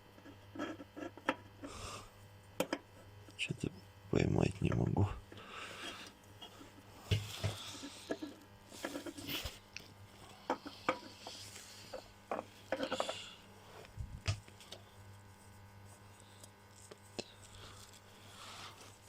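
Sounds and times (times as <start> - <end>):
oil filter knocks and scrapes: 10.4 - 13.2.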